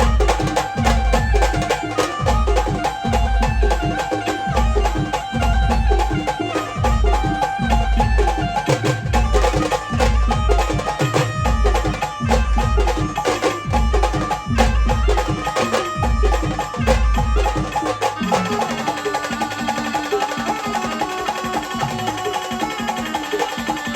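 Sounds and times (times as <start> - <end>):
heavy bass drum beat: 0.0 - 17.9
fast percussion strikes: 0.0 - 23.9
instrumental melody: 0.0 - 23.9.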